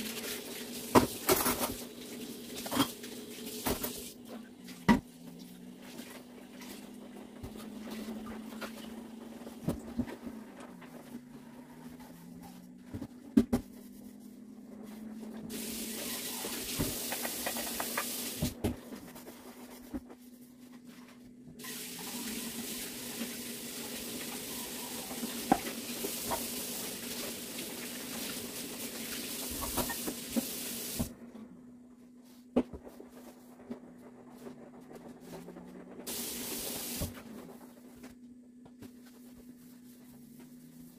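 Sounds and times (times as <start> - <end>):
tap running: 16.5 - 18.8.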